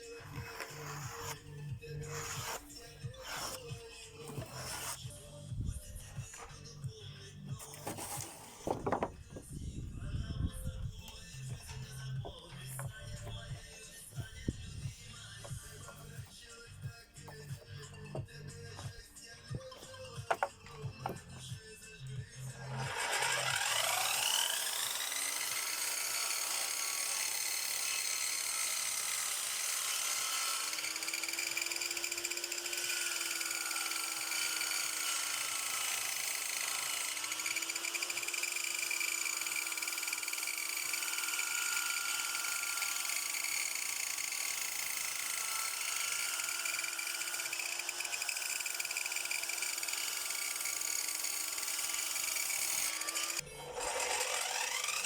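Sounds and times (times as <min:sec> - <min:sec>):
power tool motor whining: 0:00.0 - 0:05.1, 0:07.6 - 0:09.7, 0:22.4 - 0:55.0.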